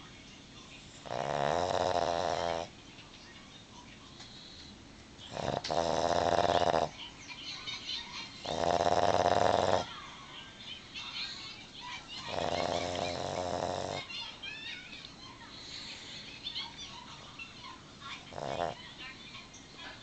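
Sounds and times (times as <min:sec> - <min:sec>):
dog snoring: 0:01.0 - 0:02.7, 0:05.3 - 0:07.0, 0:08.4 - 0:09.9, 0:12.2 - 0:14.1, 0:18.2 - 0:18.8.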